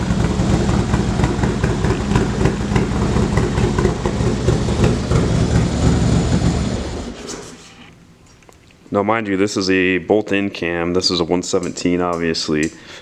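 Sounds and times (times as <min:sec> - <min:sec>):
motorcycle engine idling: 0:00.0 - 0:07.2
motorcycle engine running down: 0:00.0 - 0:07.6.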